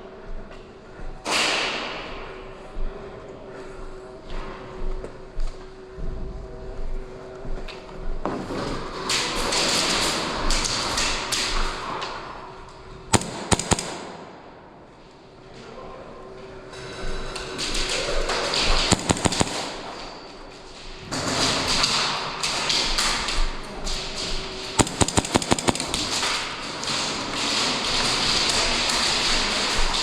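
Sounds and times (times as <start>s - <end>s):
airsoft gun bursts: 13.1s - 14.8s, 18.8s - 20.3s, 24.8s - 27.0s.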